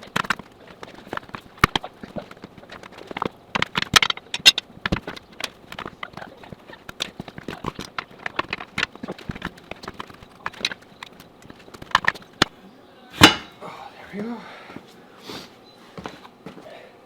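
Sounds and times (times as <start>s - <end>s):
tire spoons knocking on steel rim: 0.0s - 12.5s, 13.2s - 13.6s.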